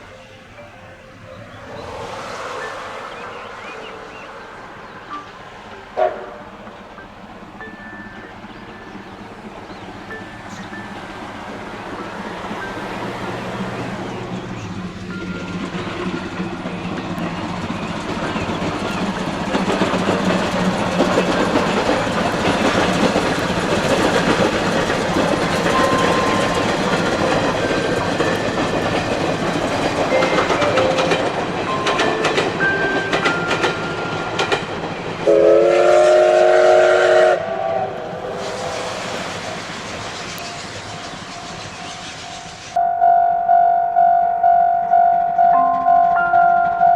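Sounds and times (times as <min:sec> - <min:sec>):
train running along track: 0:00.0 - 0:46.9
rail-joint clicks: 0:00.4 - 0:35.3, 0:38.3 - 0:42.8, 0:44.4 - 0:46.9
steam locomotive whistle: 0:05.1 - 0:06.7, 0:35.2 - 0:46.9.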